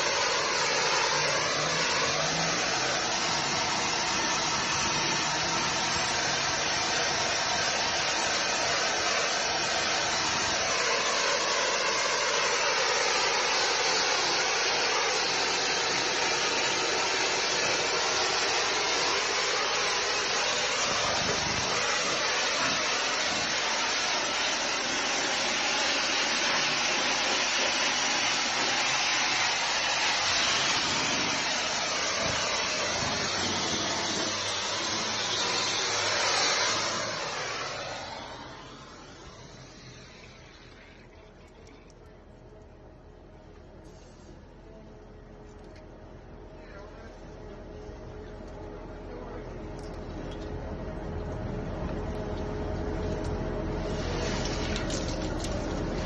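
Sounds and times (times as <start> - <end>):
pressure jet hissing on brick: 0.0 - 41.7, 53.7 - 56.0.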